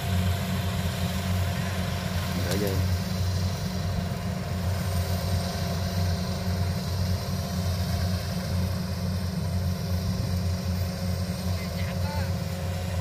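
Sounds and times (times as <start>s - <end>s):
diesel engine droning: 0.0s - 13.0s.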